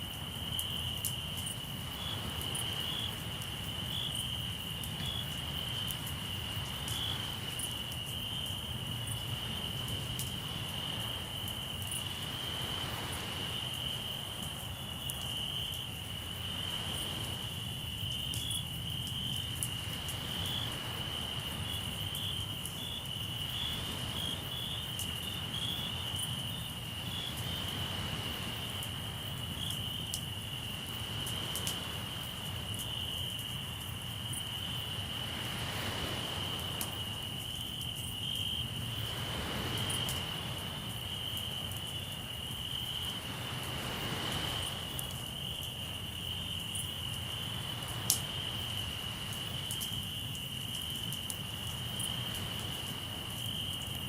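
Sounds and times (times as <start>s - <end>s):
crickets trilling: 0.0s - 54.0s
sea surf: 12.1s - 14.3s, 27.0s - 29.1s, 35.0s - 37.3s, 39.0s - 41.0s, 43.1s - 45.2s, 47.4s - 49.6s.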